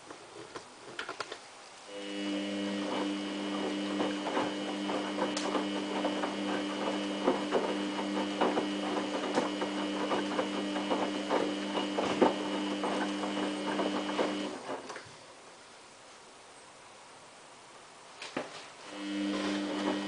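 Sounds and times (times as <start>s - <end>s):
washing machine motor whine: 1.9s - 15.0s, 18.8s - 20.0s
knocks and clicks of tumbling load: 2.8s - 15.1s.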